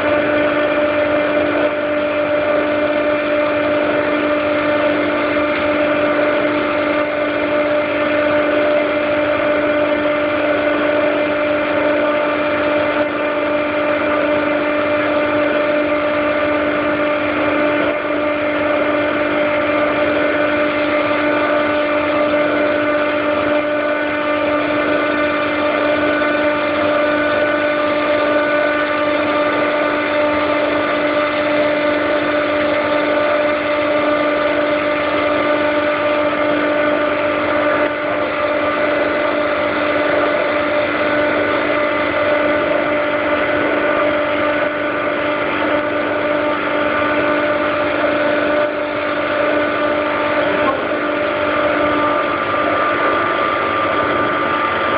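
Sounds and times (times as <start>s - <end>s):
chiller compressor humming: 0.0s - 54.9s.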